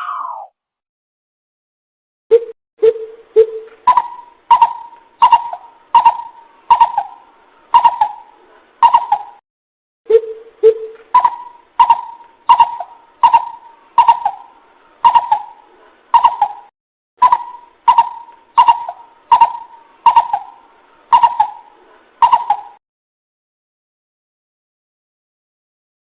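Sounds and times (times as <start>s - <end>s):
coucal hooting call: 3.9s - 9.4s, 10.1s - 22.8s.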